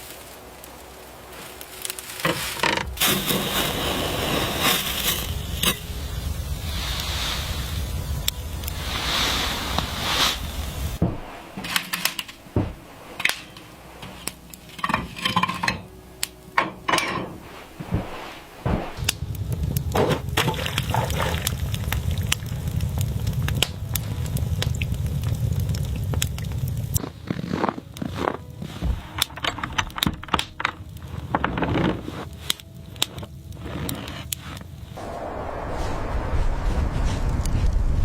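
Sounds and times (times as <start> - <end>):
low rumble: 0.0 - 15.1, 15.8 - 27.0, 34.8 - 38.0.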